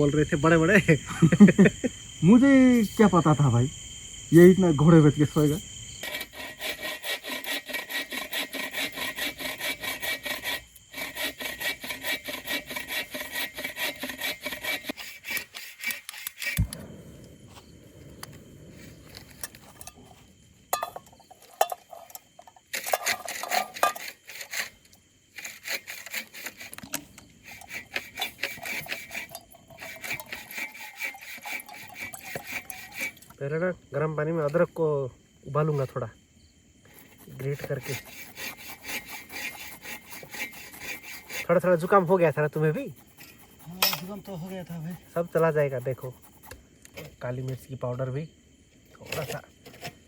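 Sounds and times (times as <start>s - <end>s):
hand tool rasping strokes: 5.4s - 16.8s, 20.8s - 33.3s, 36.8s - 47.1s.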